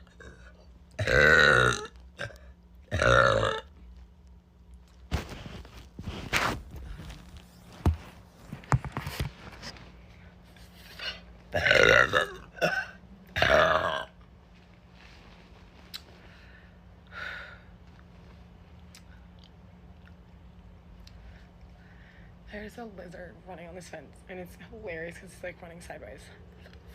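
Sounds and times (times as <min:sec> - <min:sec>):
woman burping: 0:00.0 - 0:03.7, 0:11.5 - 0:14.1.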